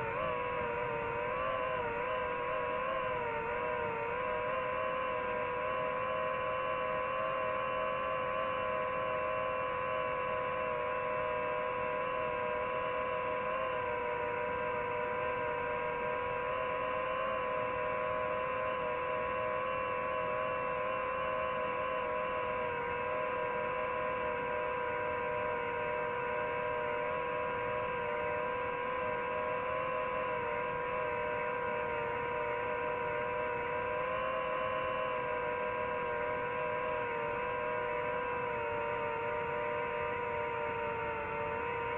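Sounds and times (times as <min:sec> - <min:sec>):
drone propellers humming: 0:00.0 - 0:41.9.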